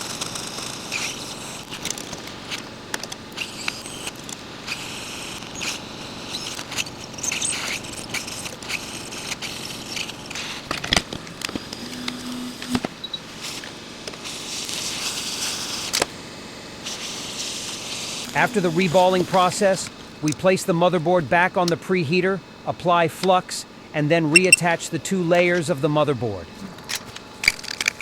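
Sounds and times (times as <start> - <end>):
hot air blower rushing: 0.0 - 24.0
short low tone: 18.2 - 19.9.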